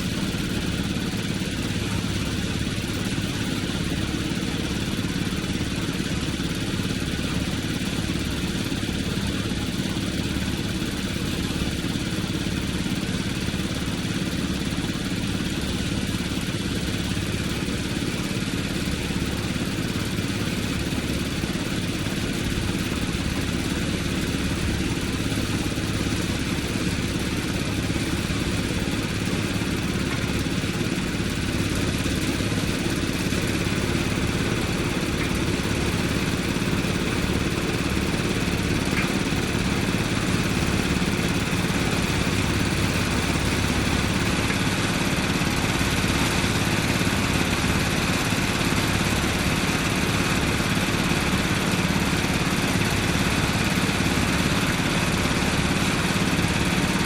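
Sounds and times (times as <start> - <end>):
engine idling: 0.0 - 57.0.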